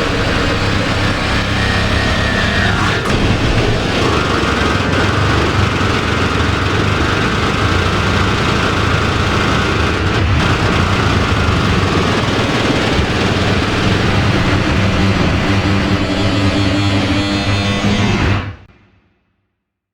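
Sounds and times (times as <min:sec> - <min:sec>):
distorted electronic buzz: 0:00.0 - 0:18.7.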